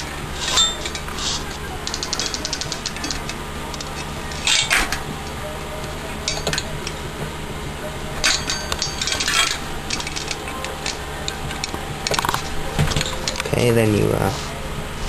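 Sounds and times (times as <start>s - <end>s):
bicycle chain clinking and rattling: 0.0s - 5.0s, 6.2s - 7.0s, 8.2s - 13.6s
steady low hum: 0.0s - 15.0s.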